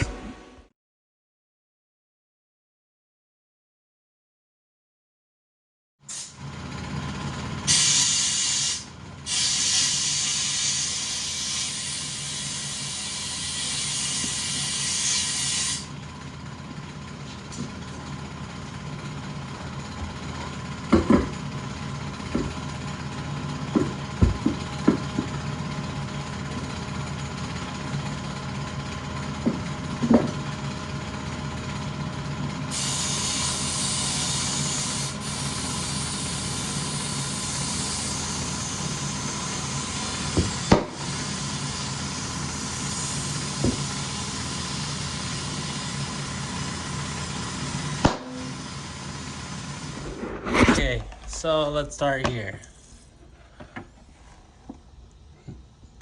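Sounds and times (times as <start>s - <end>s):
hiss of pressurized air: 7.7s - 15.9s, 32.7s - 50.2s.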